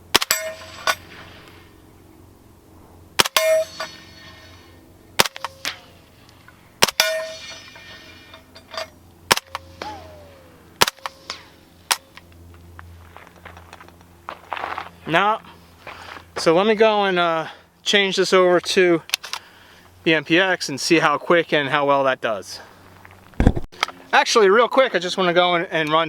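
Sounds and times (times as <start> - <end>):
suppressed gunshots: 0.1 - 1.0, 3.2 - 4.0, 5.2 - 5.8, 6.8 - 7.6, 9.3 - 12.2.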